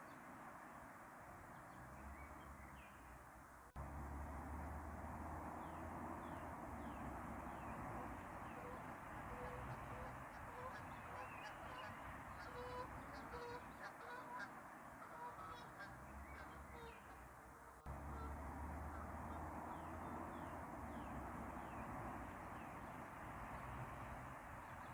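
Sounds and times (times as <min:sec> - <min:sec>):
geese honking: 0:07.9 - 0:20.2.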